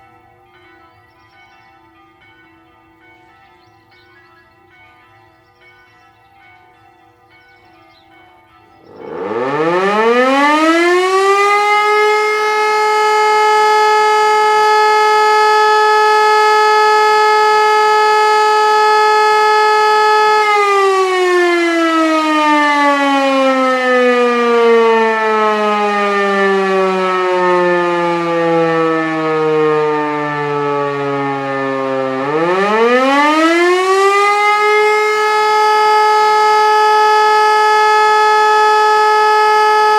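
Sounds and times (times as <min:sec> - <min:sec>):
faint church chimes: 0:00.0 - 0:09.3
electric motor siren wailing: 0:08.8 - 0:39.9.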